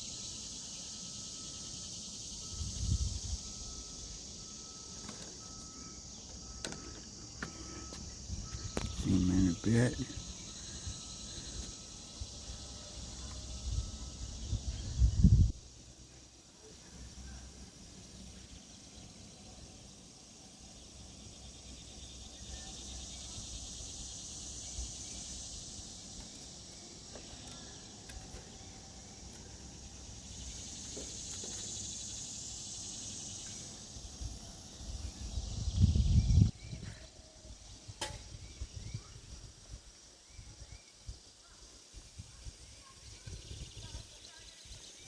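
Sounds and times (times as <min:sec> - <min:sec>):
insects buzzing: 0:00.0 - 0:45.0
sharp click: 0:38.0 - 0:38.4.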